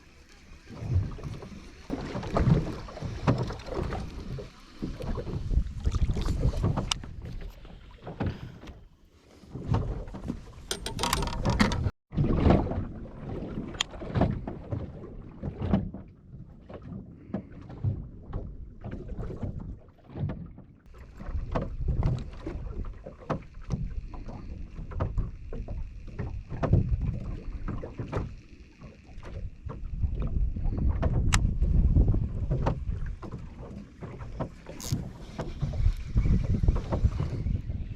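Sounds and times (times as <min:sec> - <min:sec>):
wind buffeting microphone: 0:29.5 - 0:37.9.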